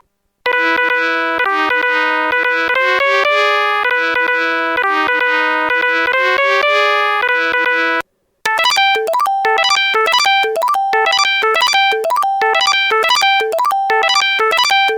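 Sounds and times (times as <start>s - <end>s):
electronic phone melody: 8.5s - 14.9s.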